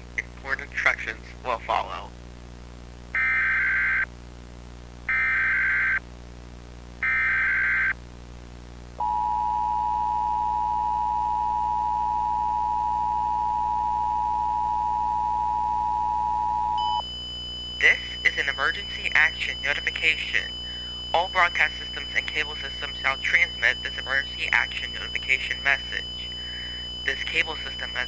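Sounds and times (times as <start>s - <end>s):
buzzing digital header bursts: 16.8s - 28.0s.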